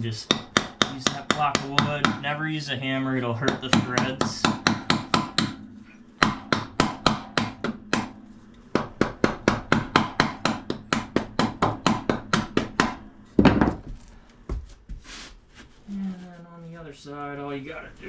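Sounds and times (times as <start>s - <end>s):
hammer striking wood block: 0.3s - 2.4s, 3.4s - 5.6s, 6.2s - 13.9s.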